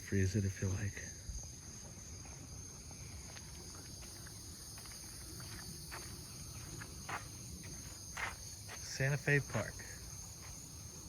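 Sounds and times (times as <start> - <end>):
insect chorus: 0.0 - 11.0
soft scuffs: 1.6 - 9.7.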